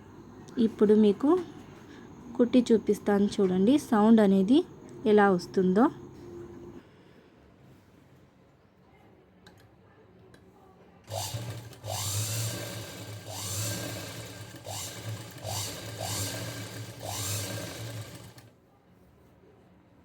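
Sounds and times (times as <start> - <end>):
sewing machine motor whining: 11.1 - 18.5.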